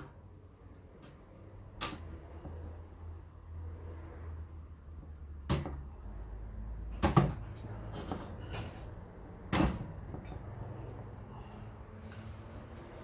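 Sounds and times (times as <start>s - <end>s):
hard fan casing clacking: 5.4s - 13.0s.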